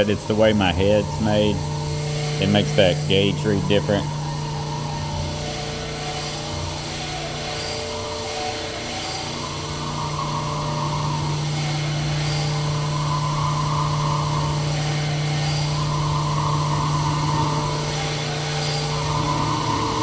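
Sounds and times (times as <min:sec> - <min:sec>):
honing machine grinding: 0:00.0 - 0:20.0.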